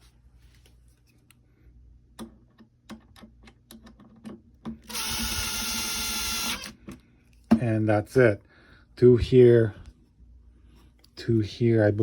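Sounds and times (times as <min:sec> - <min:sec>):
screwdriver clicking on screws: 0:04.8 - 0:06.8.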